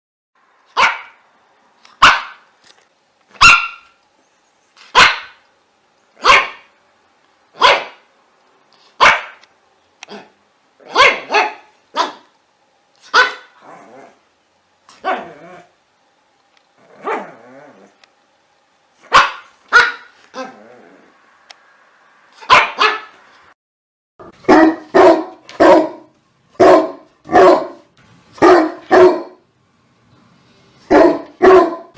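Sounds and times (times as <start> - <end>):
dog barking: 0.7 - 1.2, 2.0 - 2.4, 3.4 - 4.0, 4.9 - 5.4, 6.2 - 6.7, 7.6 - 8.1, 9.0 - 9.4, 10.1 - 12.3, 13.0 - 13.6, 15.0 - 15.4, 17.0 - 17.4, 19.0 - 20.6, 22.4 - 23.2, 24.2 - 29.4, 30.9 - 31.9.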